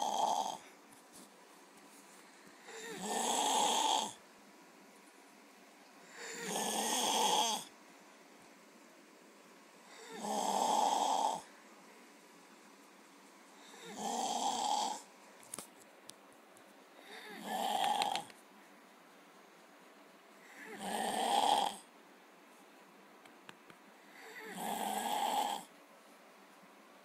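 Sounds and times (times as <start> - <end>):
man snoring: 0.0 - 0.7, 2.6 - 4.2, 6.1 - 7.7, 9.9 - 11.5, 13.6 - 15.1, 17.0 - 18.3, 20.5 - 21.9, 24.1 - 25.7.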